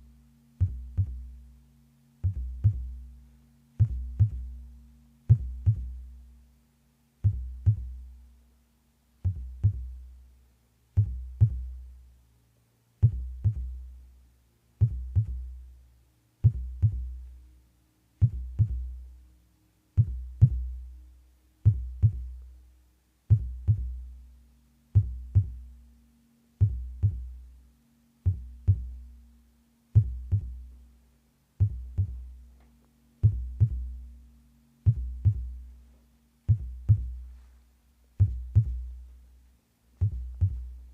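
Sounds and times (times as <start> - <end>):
faint steady hum: 0.0 - 40.9
heartbeat thumping: 0.6 - 1.3, 2.2 - 3.0, 3.8 - 4.6, 5.3 - 6.1, 7.2 - 8.0, 9.2 - 10.0, 11.0 - 11.8, 13.0 - 13.9, 14.8 - 15.6, 16.4 - 17.3, 18.2 - 19.0, 20.0 - 20.9, 21.6 - 22.4, 23.3 - 24.1, 25.0 - 25.7, 26.6 - 27.4, 28.2 - 29.1, 30.0 - 30.7, 31.6 - 32.4, 33.2 - 34.0, 34.8 - 35.7, 36.5 - 37.4, 38.2 - 39.0, 40.0 - 40.9.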